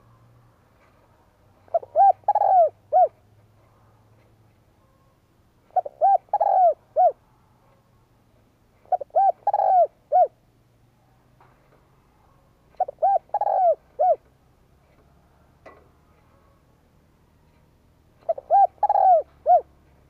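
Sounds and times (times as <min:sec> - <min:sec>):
dove cooing: 0:01.6 - 0:03.2, 0:05.6 - 0:07.2, 0:08.8 - 0:10.4, 0:12.3 - 0:14.3, 0:18.2 - 0:20.0.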